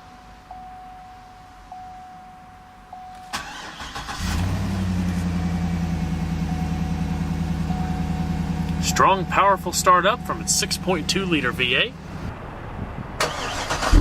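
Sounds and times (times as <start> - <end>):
faint chime: 0.0 - 3.4
engine cranking and idling: 3.1 - 12.3, 13.2 - 14.0.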